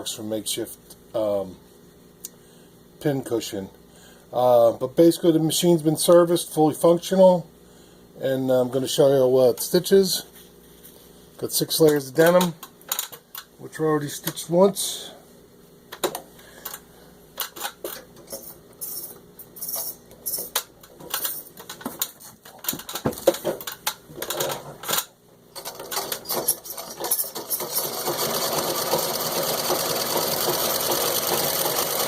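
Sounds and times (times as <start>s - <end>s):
sewing machine stitching: 25.6s - 32.0s.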